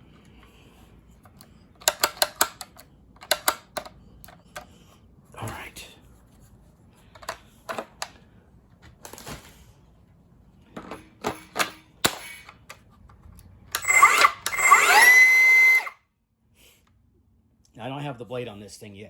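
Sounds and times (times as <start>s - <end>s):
plastic clicks and knocks: 1.4s - 4.7s
circular saw motor whine: 13.7s - 16.0s.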